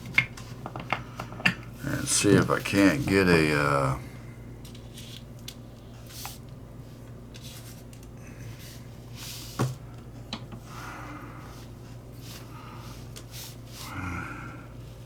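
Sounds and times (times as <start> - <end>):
steady low hum: 0.1 - 15.0
breathing close to microphone: 10.6 - 15.0.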